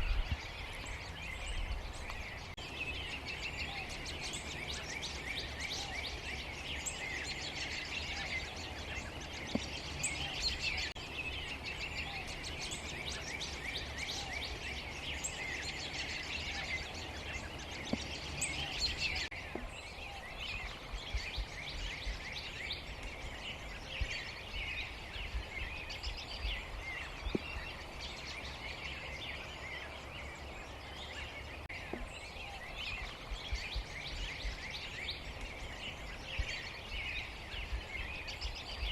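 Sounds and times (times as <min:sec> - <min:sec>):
flock of birds chattering: 0:00.0 - 0:38.9.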